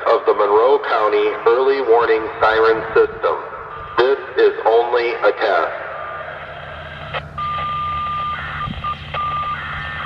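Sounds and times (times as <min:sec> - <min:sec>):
steady beep: 0:07.0 - 0:10.0
dialing tone chords: 0:07.4 - 0:10.0
short beeps: 0:07.4 - 0:10.0.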